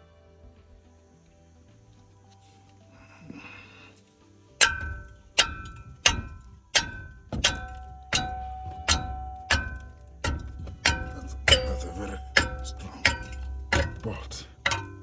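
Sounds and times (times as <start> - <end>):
metal-on-metal strikes clanging: 4.6 - 15.0.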